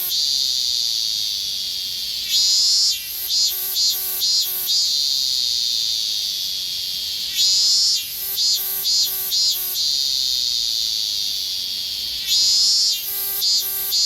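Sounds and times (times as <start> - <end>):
cicadas calling: 0.0 - 14.0.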